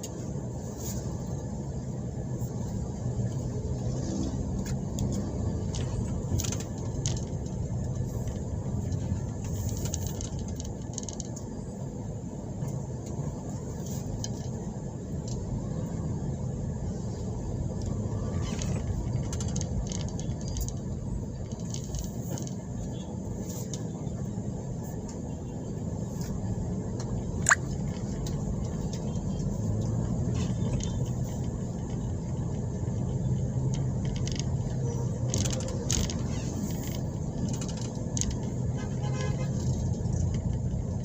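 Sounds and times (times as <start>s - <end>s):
vehicle engine rumbling: 0.0s - 41.0s
small rattles and ticks: 4.5s - 11.6s, 17.8s - 24.0s, 27.8s - 41.0s.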